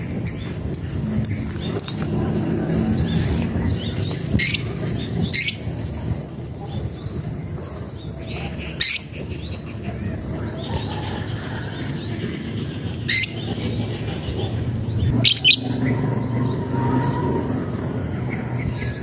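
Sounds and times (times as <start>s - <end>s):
faint background chirping: 0.0s - 19.0s
steady low rumble: 0.0s - 19.0s
bird giving harsh calls: 15.1s - 17.8s.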